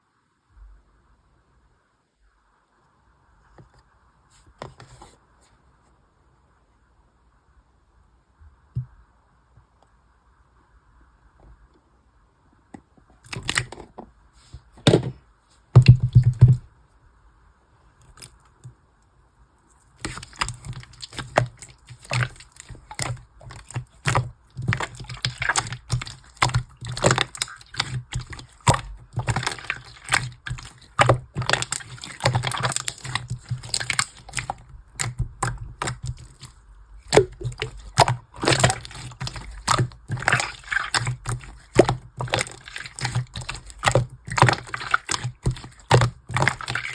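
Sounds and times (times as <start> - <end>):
slime squelching and crackling: 15.8 - 16.6, 19.8 - 46.9.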